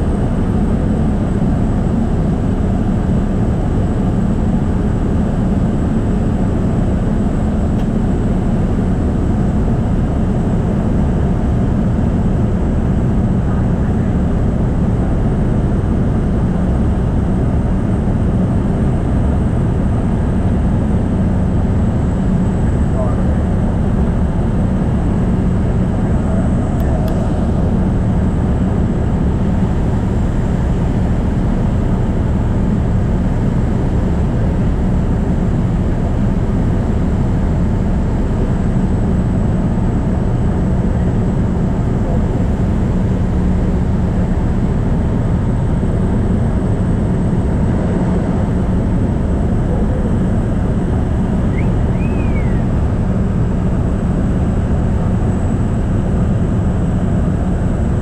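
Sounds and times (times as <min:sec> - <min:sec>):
propeller aircraft engine drone: 0:00.0 - 0:58.0
faint high whine: 0:51.2 - 0:53.6.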